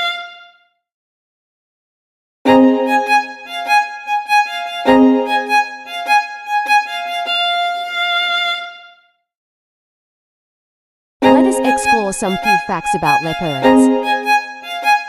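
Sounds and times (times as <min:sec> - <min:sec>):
instrumental background music: 0:02.5 - 0:06.9, 0:13.5 - 0:15.0.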